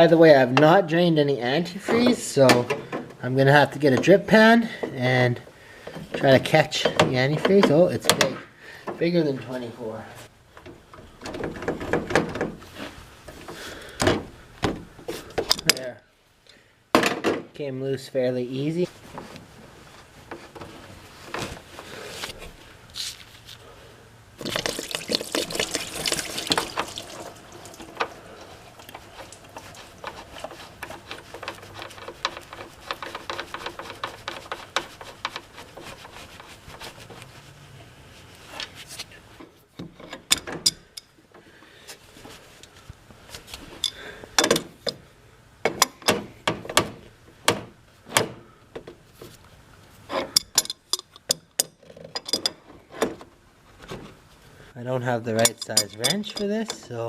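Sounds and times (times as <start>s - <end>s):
metallic clinks of tools: 55.4s - 56.9s.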